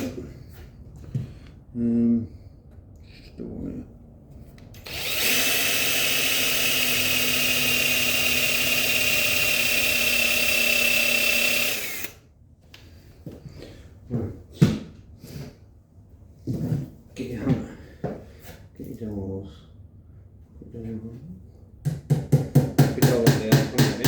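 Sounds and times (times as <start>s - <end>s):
power drill boring into wood: 4.8s - 12.2s.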